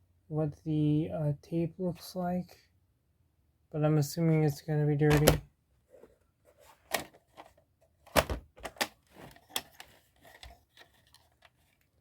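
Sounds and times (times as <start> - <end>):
plastic tape case clicks: 8.1 - 10.5.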